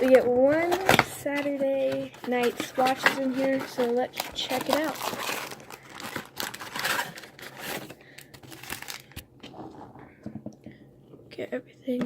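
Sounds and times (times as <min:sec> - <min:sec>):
card packaging tearing and crinkling: 0:00.0 - 0:09.3.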